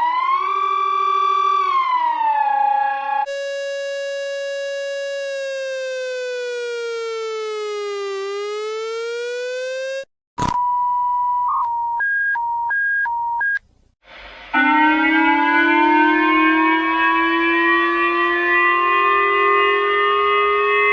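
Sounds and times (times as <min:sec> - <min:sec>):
buzzy siren tone: 0:00.0 - 0:10.1, 0:14.1 - 0:20.9
buzzy rising tone: 0:03.2 - 0:10.1
alternating beep tone: 0:03.3 - 0:13.6.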